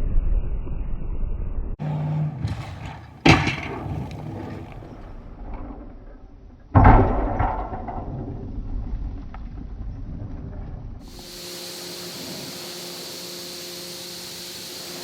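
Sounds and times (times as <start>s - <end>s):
plow blade slamming into snow: 1.8s - 5.1s.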